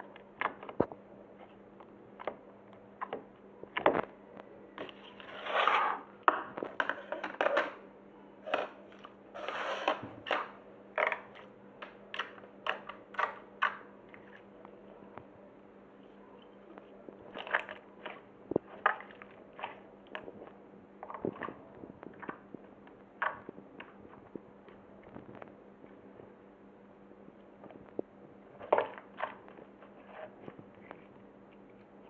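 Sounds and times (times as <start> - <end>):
slime squelches: 16.7 - 24.4.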